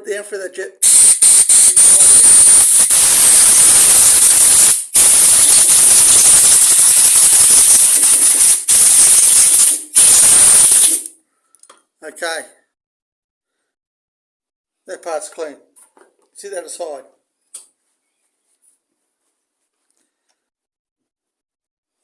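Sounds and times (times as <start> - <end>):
aerosol spray hissing: 0.8 - 11.1.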